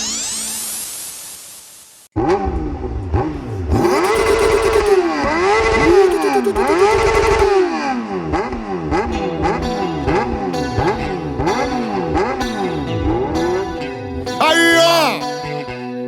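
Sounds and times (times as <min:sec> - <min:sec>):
engine revving: 0:02.2 - 0:14.4.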